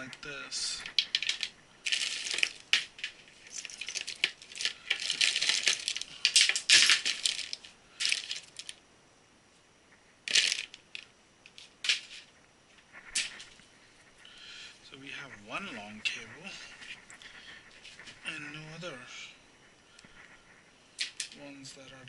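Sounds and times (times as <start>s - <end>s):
cables and hardware rattling: 0.0s - 8.8s, 10.3s - 14.2s.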